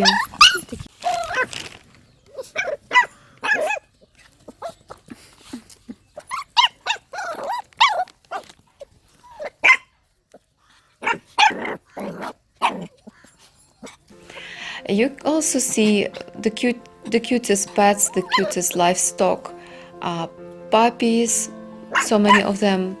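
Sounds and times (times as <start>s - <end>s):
dogs barking and yelping: 0.0s - 1.5s, 2.3s - 8.6s, 9.2s - 14.1s, 18.1s - 18.6s, 21.9s - 23.0s.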